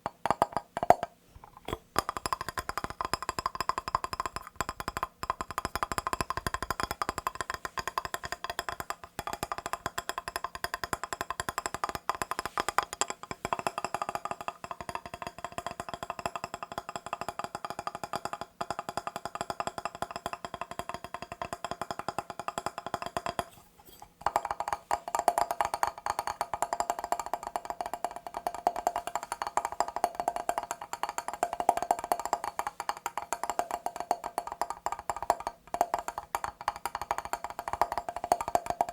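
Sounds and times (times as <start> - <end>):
rapid tapping on mirror glass: 0.0 - 38.9.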